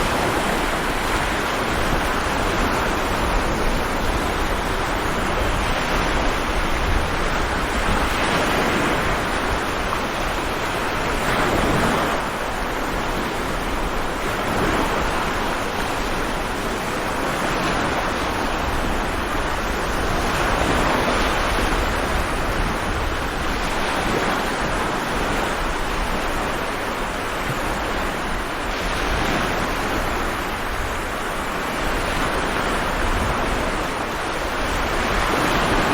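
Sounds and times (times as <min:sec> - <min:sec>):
sea waves breaking: 0:00.0 - 0:35.9.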